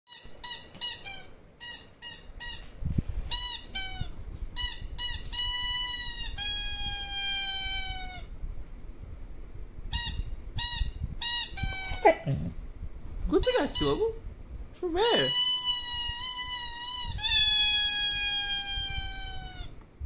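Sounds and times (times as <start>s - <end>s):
squeaky toy squeaking: 0.1s - 2.7s, 3.3s - 8.3s, 9.9s - 12.1s, 13.4s - 14.1s, 15.0s - 19.7s.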